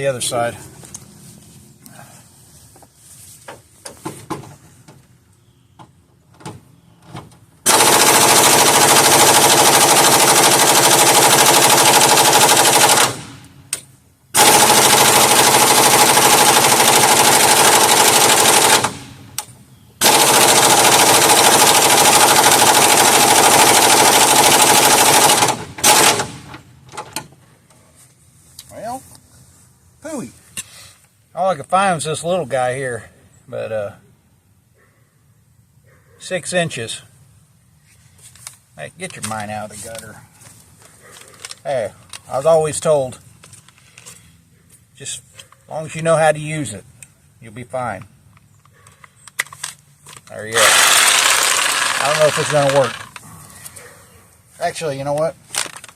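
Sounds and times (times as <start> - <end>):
pneumatic impact wrench hammering: 10.7 - 27.2, 50.6 - 53.2.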